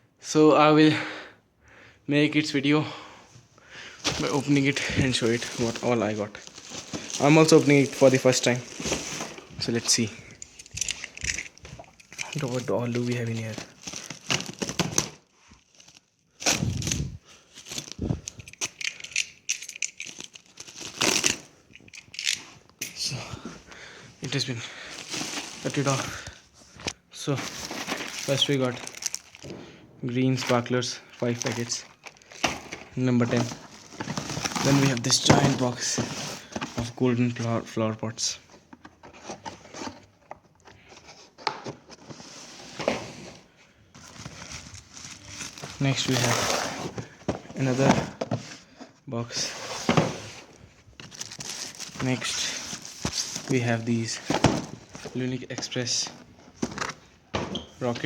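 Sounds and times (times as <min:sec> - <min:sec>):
rustling and scraping: 0:04.0 - 0:15.0, 0:38.5 - 0:57.0
packages clicking and knocking: 0:04.0 - 0:15.3, 0:25.0 - 0:29.7, 0:30.4 - 0:37.0, 0:51.0 - 0:58.0
bag crinkling and rustling: 0:04.0 - 0:19.2, 0:24.2 - 0:29.6, 0:30.3 - 0:37.4, 0:43.9 - 0:47.9, 0:50.9 - 0:57.0
cardboard boxes being handled: 0:27.4 - 0:29.5, 0:49.4 - 0:55.7.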